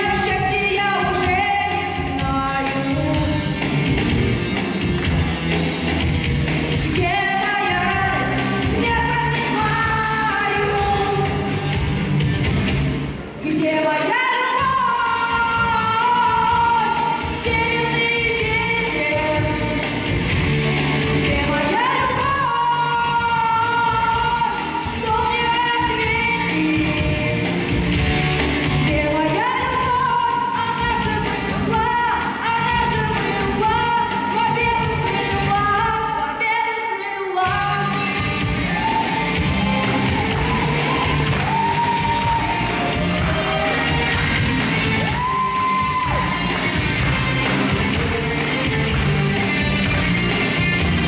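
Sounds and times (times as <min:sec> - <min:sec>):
woman singing: 0:00.0 - 0:03.7, 0:06.9 - 0:11.7, 0:13.4 - 0:19.9, 0:21.2 - 0:27.7, 0:28.6 - 0:39.2.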